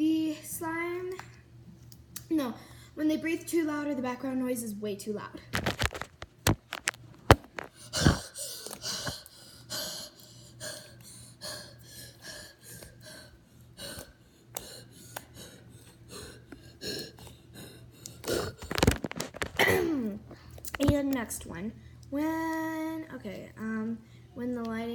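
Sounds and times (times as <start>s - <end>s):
wheezy breathing: 7.6s - 19.2s.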